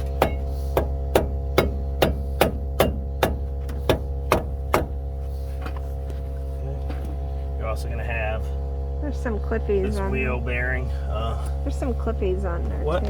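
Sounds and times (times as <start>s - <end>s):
hammer striking metal: 0.0s - 5.0s
low electrical hum: 0.0s - 13.0s.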